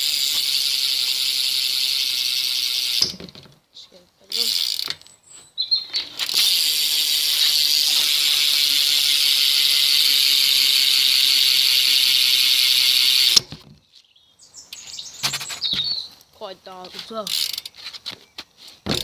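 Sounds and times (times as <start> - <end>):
bicycle freewheel ratchet buzzing: 0.0 - 3.2, 4.3 - 5.0, 6.2 - 13.4, 17.2 - 17.8.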